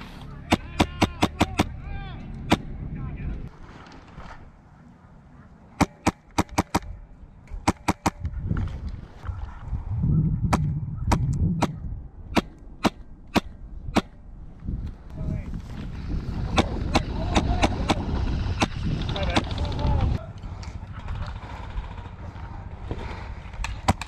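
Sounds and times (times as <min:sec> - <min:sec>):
airsoft gun shots: 0:00.4 - 0:01.8, 0:05.8 - 0:07.0, 0:07.6 - 0:08.2, 0:10.5 - 0:14.2
low rumble of movement: 0:06.8 - 0:24.0.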